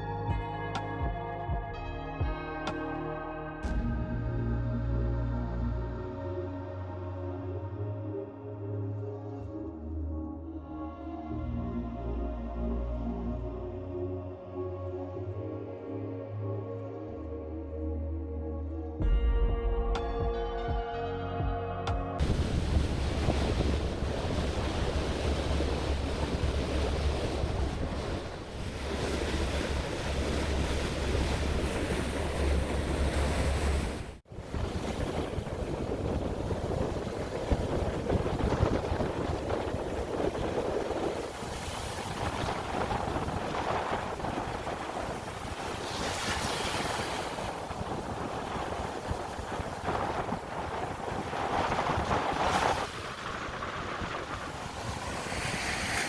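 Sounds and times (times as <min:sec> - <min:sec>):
waves washing onto beach: 0:22.2 - 0:56.0
wind buffeting microphone: 0:22.2 - 0:56.0.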